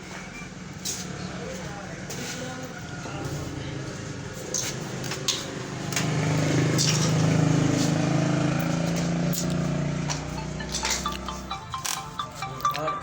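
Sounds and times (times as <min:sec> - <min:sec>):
small motorcycle engine running: 0:02.5 - 0:11.8.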